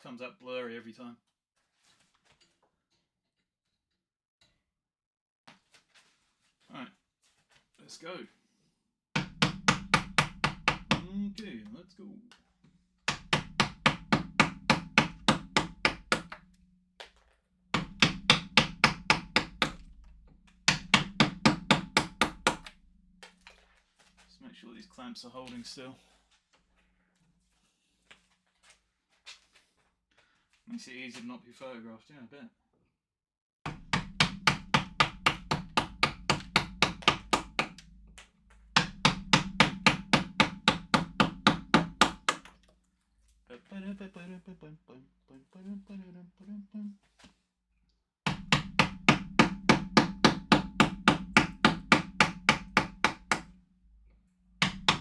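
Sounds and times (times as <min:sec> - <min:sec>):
mallet striking chisel into wood: 0:09.2 - 0:11.6, 0:13.1 - 0:16.6, 0:17.8 - 0:23.6, 0:33.7 - 0:42.7, 0:48.3 - 0:53.6, 0:54.6 - 0:55.0.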